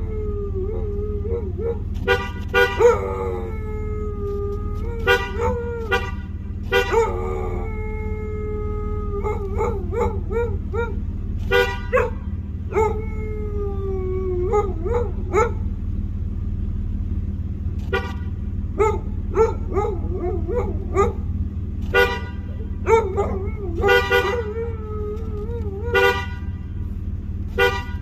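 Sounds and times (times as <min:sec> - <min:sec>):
dog howling: 0:00.0 - 0:01.9, 0:02.8 - 0:06.1, 0:06.8 - 0:11.1, 0:11.9 - 0:15.6, 0:18.8 - 0:21.3, 0:22.5 - 0:26.2
low rumble: 0:00.0 - 0:28.0
car horn toots: 0:01.9 - 0:03.4, 0:04.8 - 0:07.5, 0:11.2 - 0:12.8, 0:17.8 - 0:18.7, 0:21.3 - 0:28.0.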